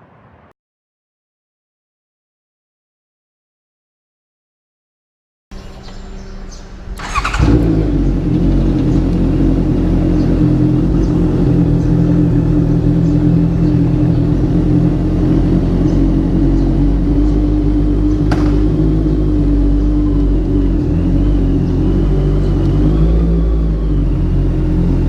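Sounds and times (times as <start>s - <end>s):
motorcycle engine starting and running: 5.5s - 25.0s.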